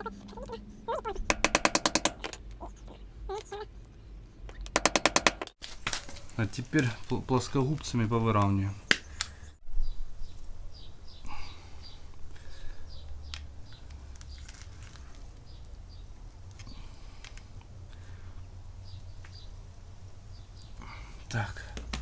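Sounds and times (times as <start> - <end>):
pliers clicking and scraping metal: 1.2 - 2.4, 4.7 - 5.6.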